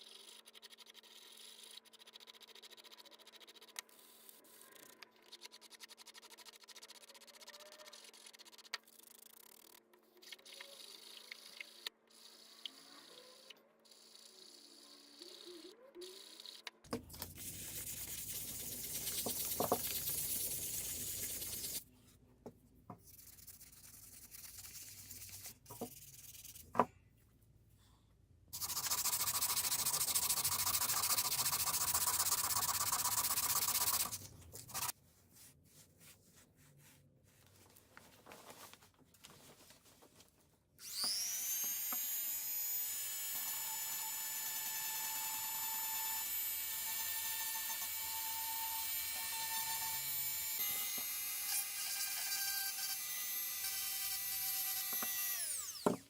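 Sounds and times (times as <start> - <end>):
rotary power tool whining: 40.8 - 56.0.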